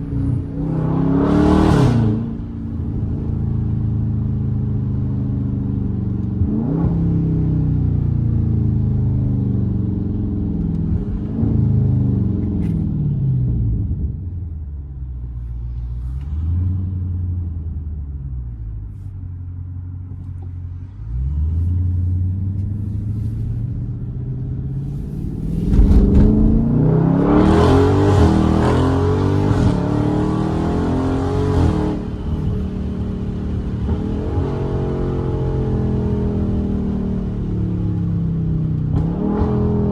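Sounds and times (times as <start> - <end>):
car engine revving and accelerating: 0.0 - 4.0, 6.2 - 7.6, 20.7 - 39.9.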